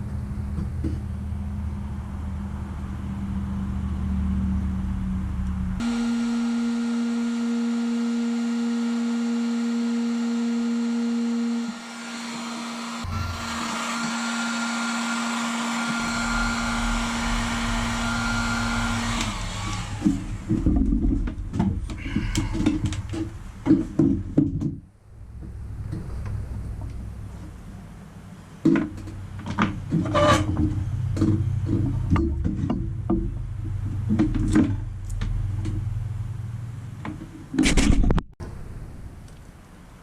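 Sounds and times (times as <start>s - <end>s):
small electric motor with rushing air: 5.8s - 20.7s
knocks and clatter of handling: 20.5s - 24.8s.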